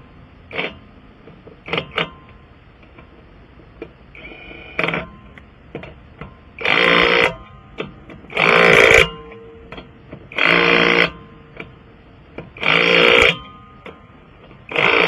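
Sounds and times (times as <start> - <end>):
impact wrench buzzing: 0.0 - 2.4, 4.1 - 15.0.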